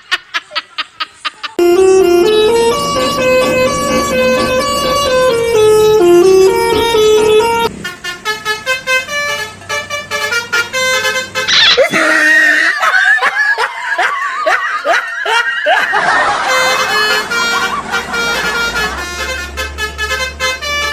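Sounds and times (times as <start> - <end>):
multi-tone bus horn tune: 1.6 - 12.0, 15.8 - 20.9
rising whoops and warbling: 11.5 - 13.2.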